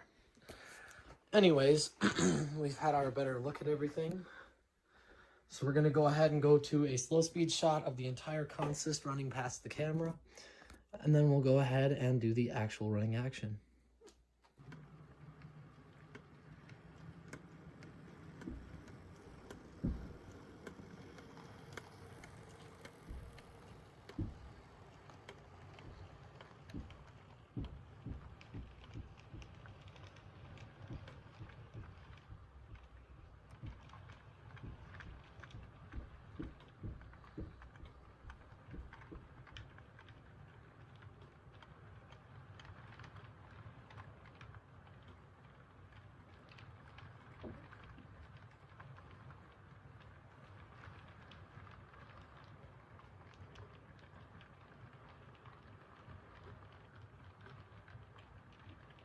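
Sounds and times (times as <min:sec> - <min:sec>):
man talking: 0:01.3 - 0:04.4, 0:05.5 - 0:10.2, 0:11.0 - 0:13.6
model train motor hum: 0:14.6 - 0:34.0.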